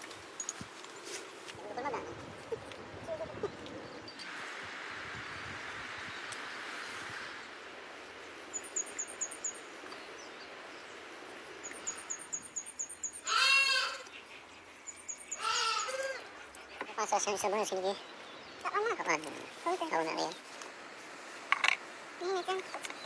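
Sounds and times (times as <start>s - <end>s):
bird chirping high: 11.6s - 16.8s.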